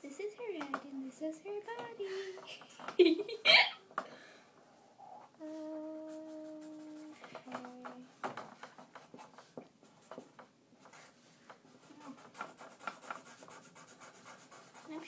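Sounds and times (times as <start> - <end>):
pencil scratching on paper: 6.1 - 7.8, 8.5 - 15.0.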